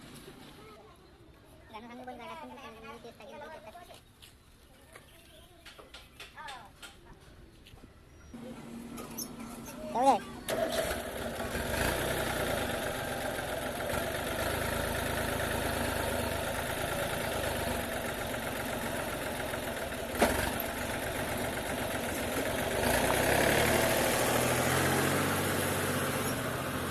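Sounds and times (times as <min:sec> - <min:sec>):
tractor engine running: 0:08.4 - 0:26.9.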